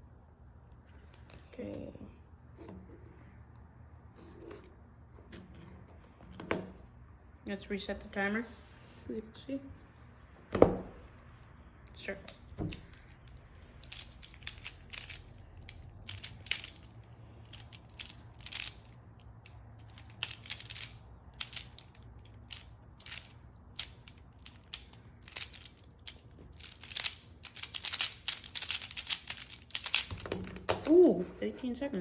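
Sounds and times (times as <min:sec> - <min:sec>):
plastic puzzle clicking: 0:12.7 - 0:30.9.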